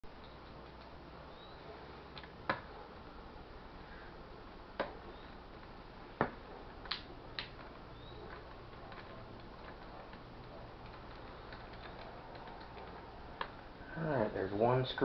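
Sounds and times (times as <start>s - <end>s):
faint steady hum: 0.0s - 15.0s
sharp clicks and taps: 0.2s - 1.0s, 4.7s - 13.6s.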